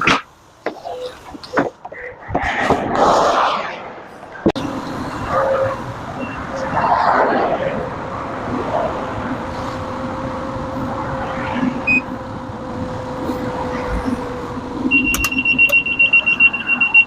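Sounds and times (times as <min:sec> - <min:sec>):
car running: 0:00.0 - 0:17.0
high electronic beeps: 0:11.8 - 0:12.1, 0:14.9 - 0:17.0.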